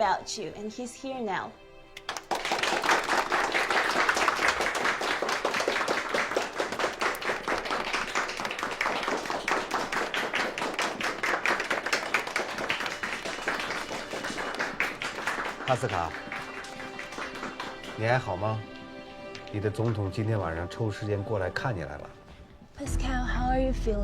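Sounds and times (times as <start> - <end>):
people applauding: 2.0 - 18.8.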